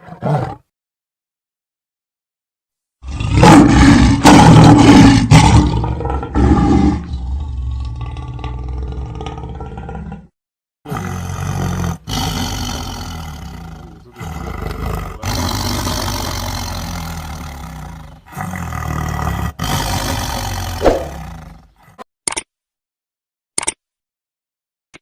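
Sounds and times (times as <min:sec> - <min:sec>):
lion roaring and growling: 0:00.0 - 0:00.6, 0:03.0 - 0:10.3, 0:10.9 - 0:22.0.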